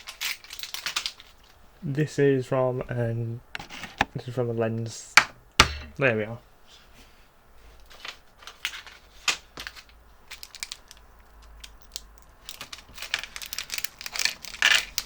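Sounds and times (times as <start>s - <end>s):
small parts clicking and tapping: 0.0s - 1.3s, 8.6s - 15.0s
rustling and crinkling: 0.0s - 1.7s, 6.6s - 15.0s.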